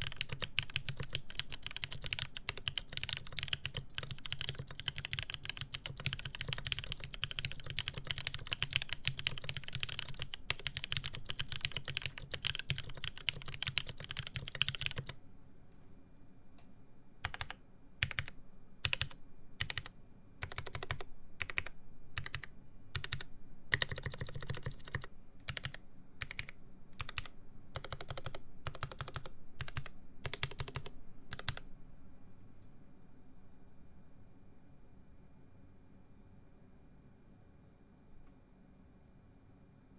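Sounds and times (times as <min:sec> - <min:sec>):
mechanical keyboard typing: 0:00.0 - 0:15.2, 0:17.2 - 0:31.6.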